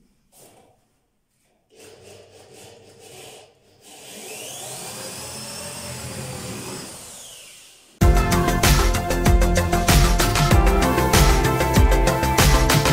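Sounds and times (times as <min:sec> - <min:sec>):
electric drill boring into wood: 0:03.8 - 0:08.0.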